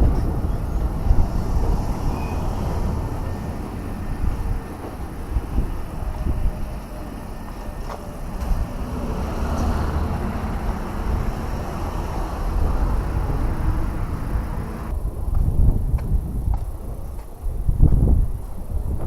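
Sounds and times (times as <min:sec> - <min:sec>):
motor vehicle passing: 0:00.0 - 0:15.0
steady low rumble: 0:00.0 - 0:19.0.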